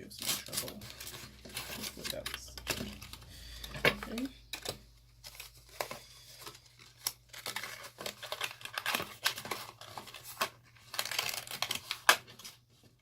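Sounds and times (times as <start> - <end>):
stiff paper rustling and crackling: 0.0 - 13.0
sharp paper clicks and snaps: 6.8 - 12.6.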